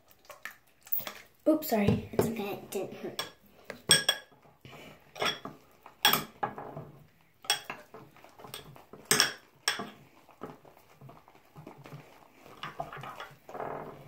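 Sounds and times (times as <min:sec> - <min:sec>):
utensil scraping bowl: 0:01.8 - 0:14.0
utensil clinking on bowl: 0:03.1 - 0:04.3, 0:05.2 - 0:06.6, 0:07.4 - 0:10.0.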